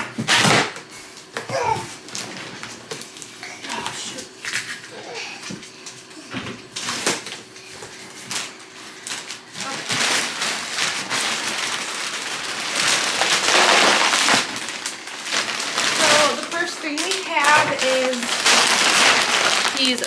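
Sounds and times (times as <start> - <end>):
plastic packaging crinkling: 8.1 - 20.0.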